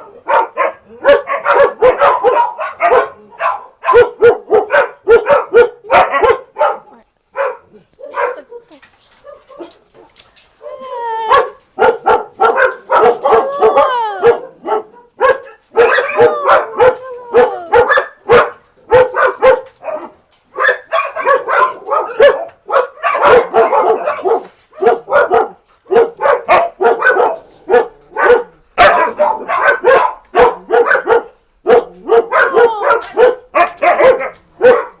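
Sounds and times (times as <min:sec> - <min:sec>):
dogs barking: 0:00.0 - 0:35.0
dogs howling: 0:09.2 - 0:34.9.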